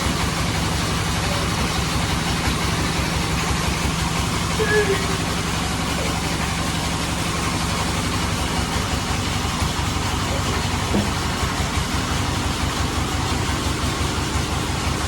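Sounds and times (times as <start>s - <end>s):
band saw machinery droning: 0.0s - 15.0s.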